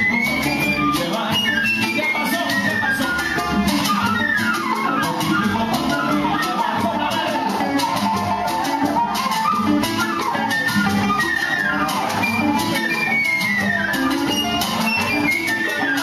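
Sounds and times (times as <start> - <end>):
band playing melodic runs: 0.0 - 16.0
steady percussion rhythm: 0.0 - 16.0.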